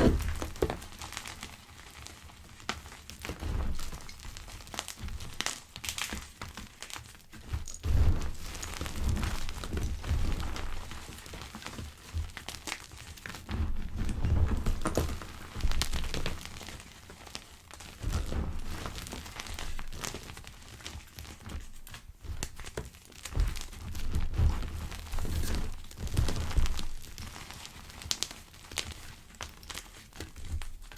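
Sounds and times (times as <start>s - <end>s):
low dull thud: 0.0s - 0.8s
chalk crunching and crackling: 0.0s - 3.2s.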